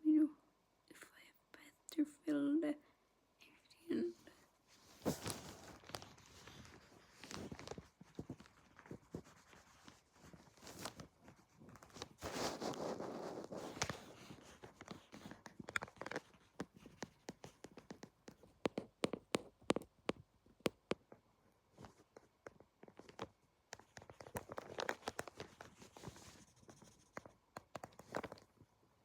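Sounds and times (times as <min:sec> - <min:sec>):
pencil scratching on paper: 0:06.6 - 0:10.6
pencil tapping: 0:13.8 - 0:21.2.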